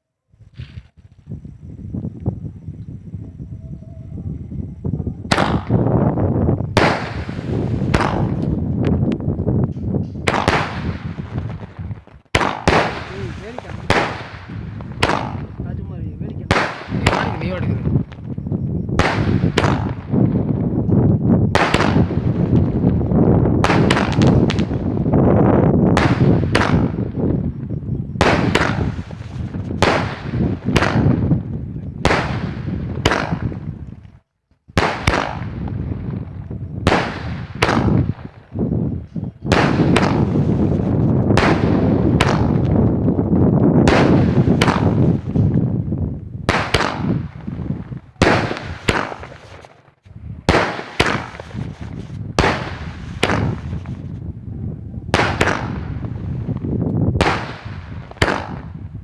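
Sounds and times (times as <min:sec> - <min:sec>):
firework bangs: 0:05.3 - 0:20.7, 0:21.5 - 0:25.2, 0:25.9 - 0:34.0, 0:34.7 - 0:38.7, 0:39.4 - 0:54.2, 0:55.1 - 0:59.0
firework crackling: 0:06.7 - 0:08.9, 0:10.2 - 0:15.9, 0:28.2 - 0:34.0, 0:46.4 - 0:49.9, 0:50.5 - 0:54.2.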